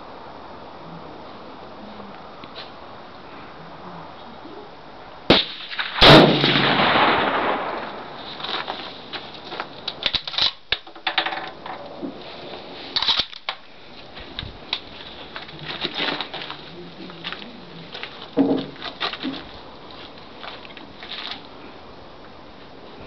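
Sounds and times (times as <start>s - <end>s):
rifle shot ringing out: 5.3s - 8.2s
sharp short crack: 5.3s - 9.3s.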